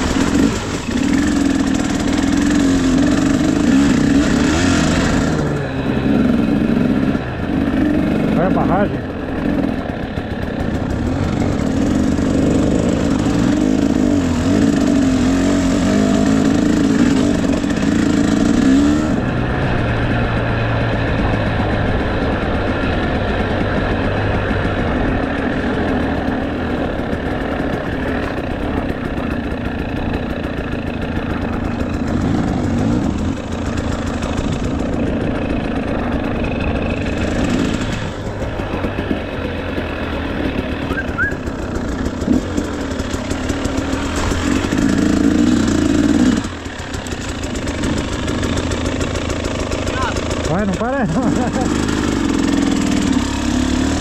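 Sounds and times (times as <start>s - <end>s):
two-stroke motorcycle engine revving: 0.0s - 54.0s.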